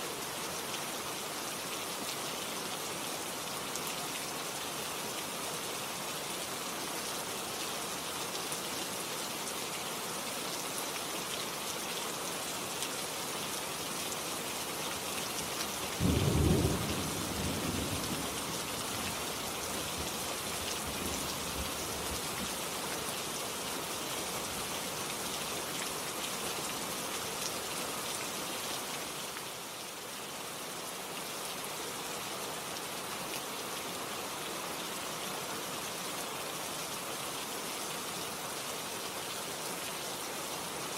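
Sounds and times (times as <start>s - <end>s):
steady rain falling: 0.0s - 40.9s
low rumble of thunder: 16.0s - 18.6s.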